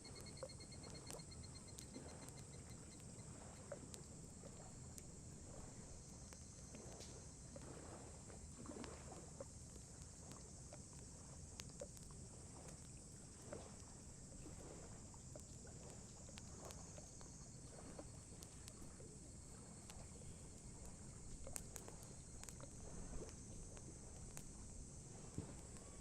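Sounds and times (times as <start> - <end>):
low steady rumble: 0.0 - 26.0
campfire crackling and popping: 3.8 - 7.1, 14.8 - 26.0.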